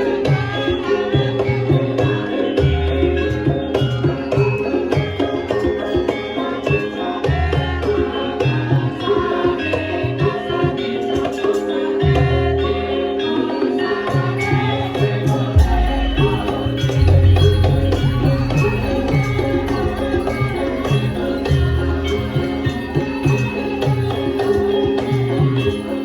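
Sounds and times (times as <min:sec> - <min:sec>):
ringing metal percussion: 0:00.0 - 0:26.0
hand drum strokes: 0:14.6 - 0:26.0
deep low gong note: 0:15.6 - 0:22.6.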